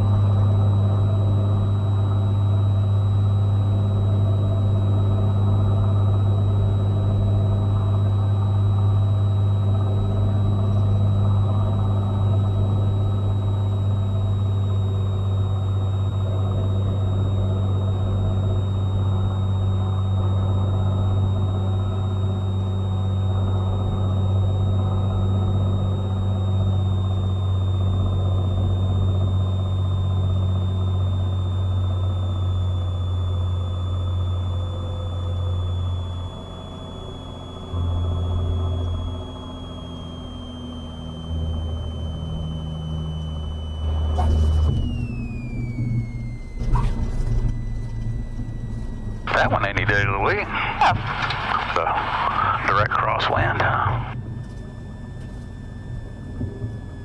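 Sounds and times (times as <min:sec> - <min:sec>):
aircraft engine and propeller droning: 0:00.0 - 0:57.0
thin high whine: 0:30.8 - 0:54.6.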